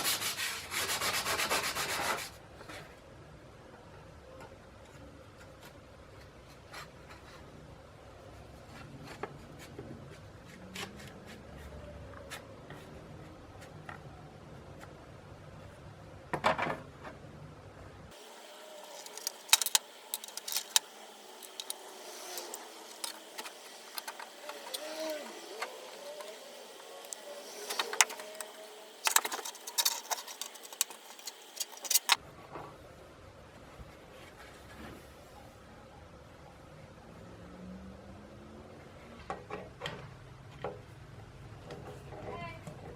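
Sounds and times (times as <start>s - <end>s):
sharp clicks of small objects: 18.8s - 26.4s.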